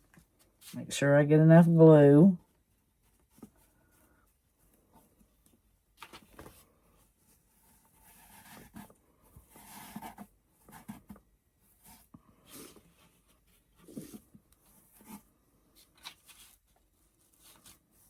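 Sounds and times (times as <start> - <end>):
brush rustling on material: 0.0 - 0.9.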